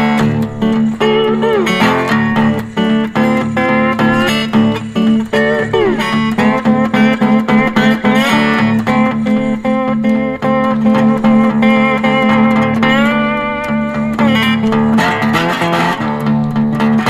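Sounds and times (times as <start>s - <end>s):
plucked guitar with sliding notes: 0.0s - 17.0s.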